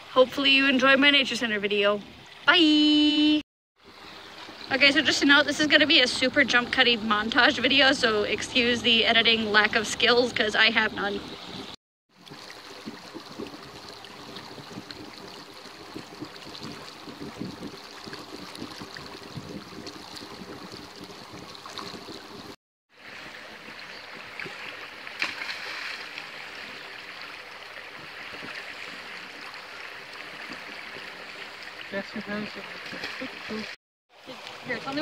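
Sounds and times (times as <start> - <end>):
stream water rushing: 9.5 - 35.0.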